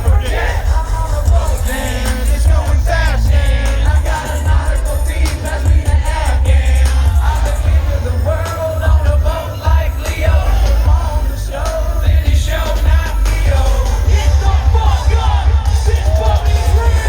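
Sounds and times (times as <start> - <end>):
heavy bass: 0.0 - 17.0
rap vocals: 0.0 - 17.0.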